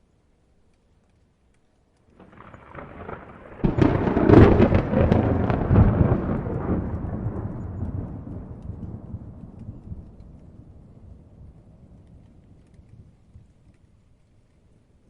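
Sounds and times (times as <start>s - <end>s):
thunder rumbling and cracking: 2.2s - 14.0s.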